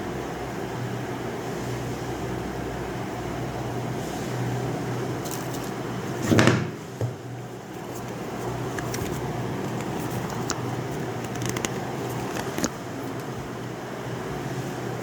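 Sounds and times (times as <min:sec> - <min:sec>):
loud thump: 0:06.2 - 0:07.2.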